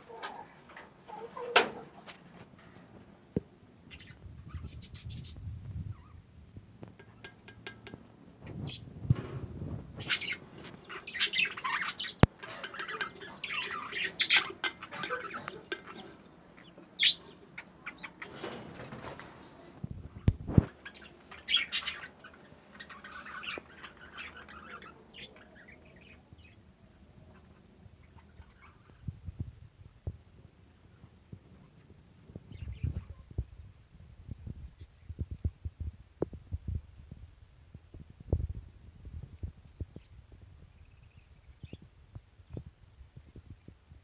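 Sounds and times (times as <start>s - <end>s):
birds chirping and squawking: 3.8s - 6.2s, 8.4s - 19.6s, 20.2s - 29.1s, 31.6s - 33.3s, 39.9s - 41.9s.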